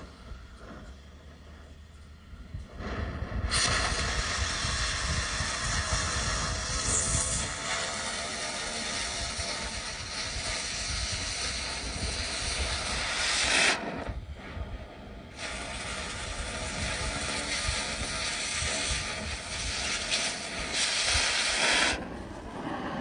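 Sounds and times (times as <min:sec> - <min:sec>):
cutting torch hissing: 0:02.8 - 0:14.0, 0:15.3 - 0:22.1.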